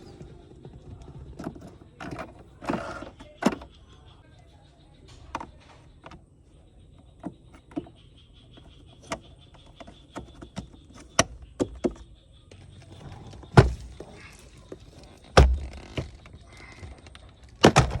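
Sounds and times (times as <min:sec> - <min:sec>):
heavy thumps: 0:12.8 - 0:18.0.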